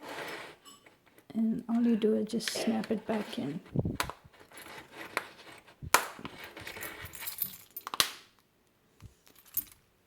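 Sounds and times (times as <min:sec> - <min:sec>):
handling rustle: 0:03.1 - 0:08.0.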